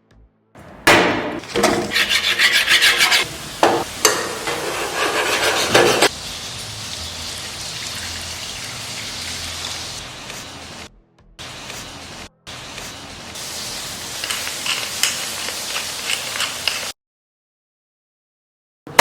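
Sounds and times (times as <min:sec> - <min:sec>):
food scraping and rasping: 0:00.6 - 0:06.1, 0:14.3 - 0:16.9.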